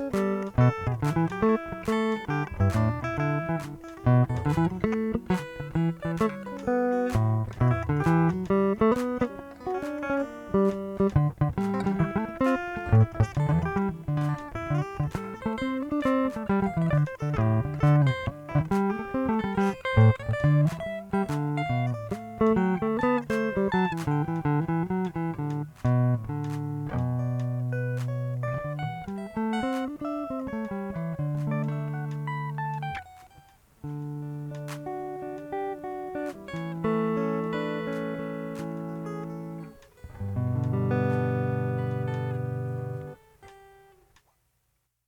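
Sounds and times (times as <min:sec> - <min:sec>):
fingerstyle acoustic guitar: 0:00.0 - 0:44.2.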